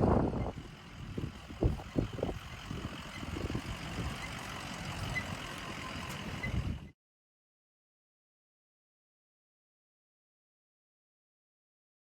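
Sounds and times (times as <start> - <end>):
engine rumble: 0.0 - 7.0.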